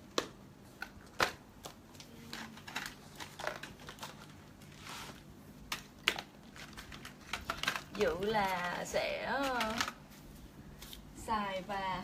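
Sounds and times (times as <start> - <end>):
packaging rustle: 1.9 - 10.2.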